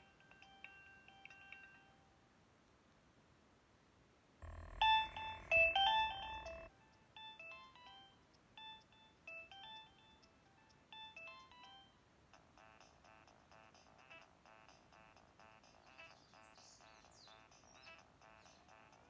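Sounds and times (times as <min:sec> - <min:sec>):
phone ringtone beeping melody: 0:04.4 - 0:10.3.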